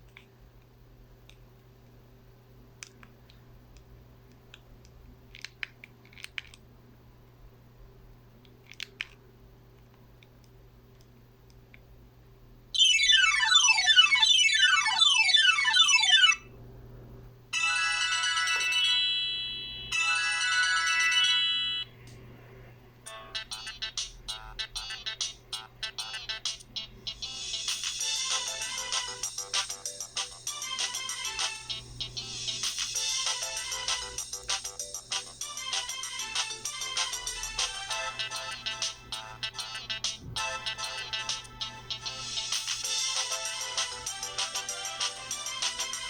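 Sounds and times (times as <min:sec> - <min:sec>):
phone ringtones: 0:12.8 - 0:16.4, 0:17.6 - 0:21.9.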